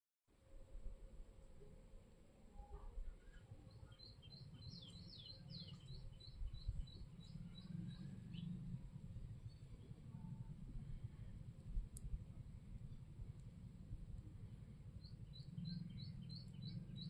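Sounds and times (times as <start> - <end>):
bird chirping faintly: 2.5 - 13.5, 14.1 - 17.0
low rumble: 6.2 - 17.0.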